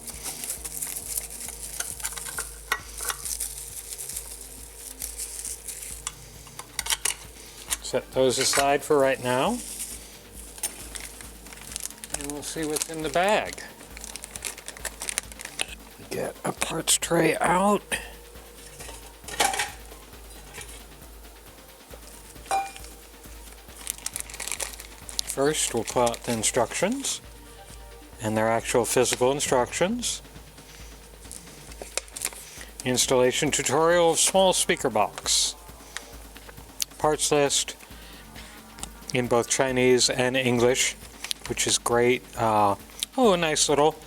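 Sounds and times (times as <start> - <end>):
small clicks and rattles: 0.0 - 8.8, 9.6 - 16.0, 21.8 - 26.8
plastic film crinkling as peeled: 0.0 - 44.0.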